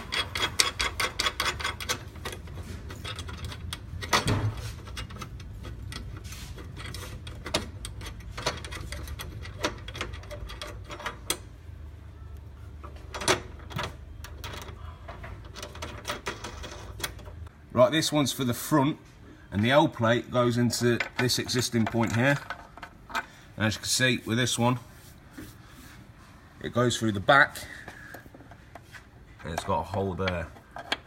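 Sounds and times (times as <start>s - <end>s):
metal brackets clicking and knocking: 0.0s - 11.5s, 12.8s - 17.5s, 20.7s - 23.3s, 27.9s - 31.0s.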